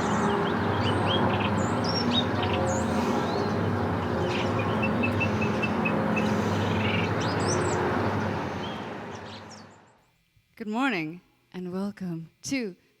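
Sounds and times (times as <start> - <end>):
traffic rumble: 0.0 - 9.9
birds chirping: 0.0 - 10.0.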